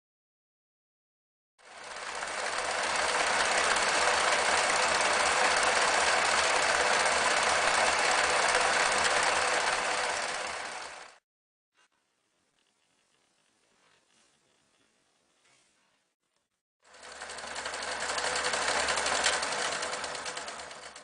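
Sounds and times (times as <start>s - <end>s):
electric sewing machine running: 1.6s - 11.2s, 16.8s - 21.0s.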